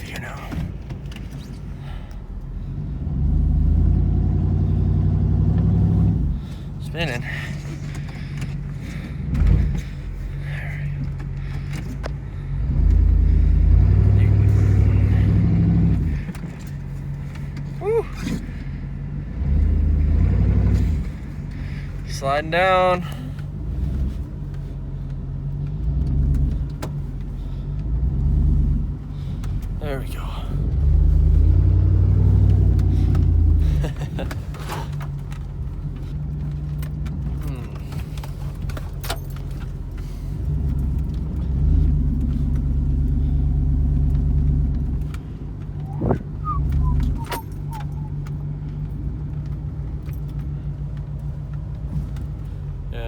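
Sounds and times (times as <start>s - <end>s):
truck engine running: 0.0s - 53.0s
truck squeaks: 45.8s - 48.5s.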